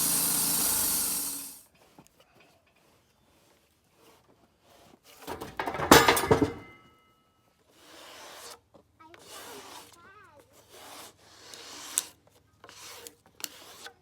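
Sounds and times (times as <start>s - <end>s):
wood scraping as it slides: 2.8s - 5.3s, 7.7s - 14.0s
wood pieces clattering against metal: 5.2s - 6.8s.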